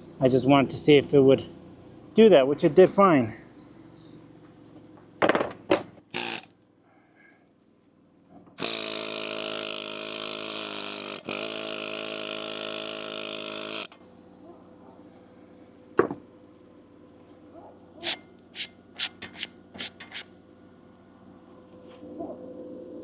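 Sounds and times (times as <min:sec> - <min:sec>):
sharp metal knocks: 0:05.2 - 0:06.0
welder buzzing crackle: 0:06.1 - 0:06.5, 0:08.6 - 0:14.0.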